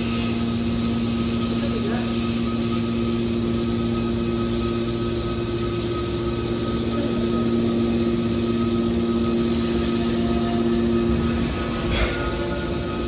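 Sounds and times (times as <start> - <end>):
noisy background: 0.0 - 13.0
hydraulic baler humming: 2.8 - 13.0.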